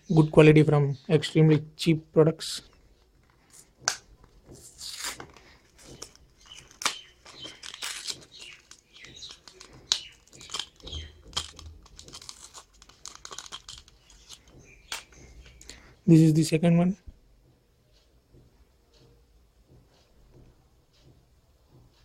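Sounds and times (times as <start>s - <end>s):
plastic packaging crinkling: 4.6s - 15.2s.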